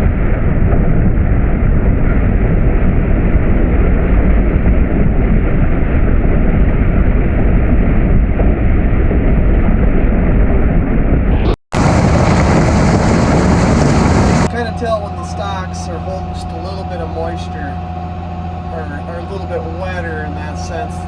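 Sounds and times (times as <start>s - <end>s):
heavy farm machinery rumbling: 11.7s - 21.0s
brighter machine noise: 11.8s - 21.0s.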